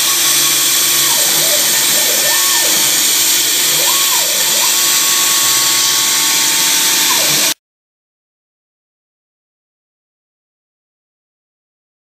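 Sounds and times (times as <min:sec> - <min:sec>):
machine spindle cutting aluminium: 0:00.0 - 0:07.6.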